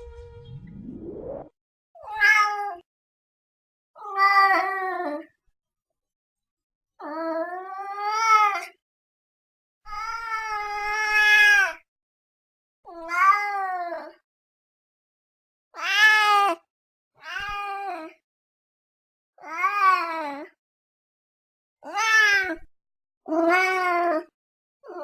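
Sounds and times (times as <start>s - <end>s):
cat meowing: 2.0s - 2.8s, 19.4s - 20.4s, 21.8s - 22.7s.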